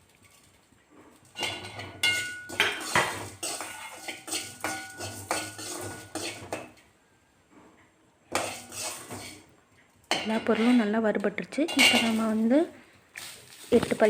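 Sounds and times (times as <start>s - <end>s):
utensil scraping and clinking pan: 1.2s - 6.8s, 8.3s - 9.5s, 10.1s - 11.0s, 11.6s - 12.5s.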